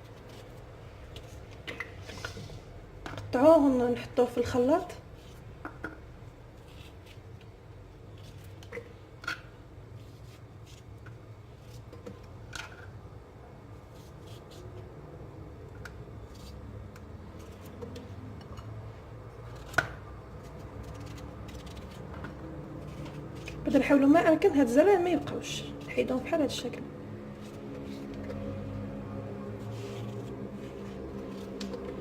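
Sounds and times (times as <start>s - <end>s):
steady low hum: 0.0s - 32.0s
knife cutting cucumber: 19.4s - 23.7s, 29.7s - 32.0s.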